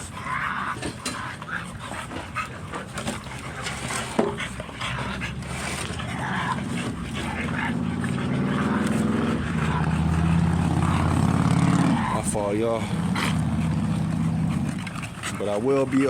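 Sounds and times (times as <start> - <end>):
dogs panting and whimpering: 0.0 - 16.0
low engine drone: 2.6 - 15.0.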